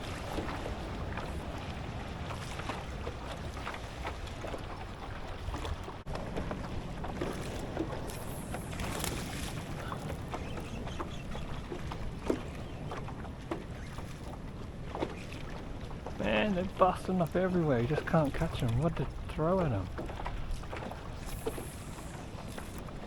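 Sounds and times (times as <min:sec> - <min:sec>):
water lapping against kayak hull: 0:00.0 - 0:23.0
hissing swell of water: 0:21.2 - 0:22.8.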